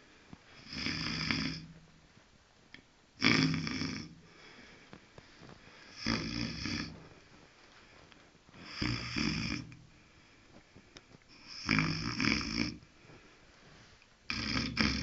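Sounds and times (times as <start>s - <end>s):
dog snoring: 0.6s - 1.7s, 3.2s - 4.2s, 5.9s - 7.0s, 8.6s - 9.8s, 11.3s - 12.9s, 14.3s - 15.0s.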